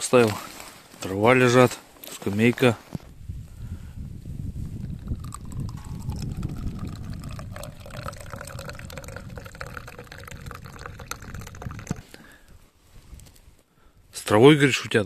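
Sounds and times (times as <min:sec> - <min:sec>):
tea pouring into a cup: 0:04.8 - 0:12.3.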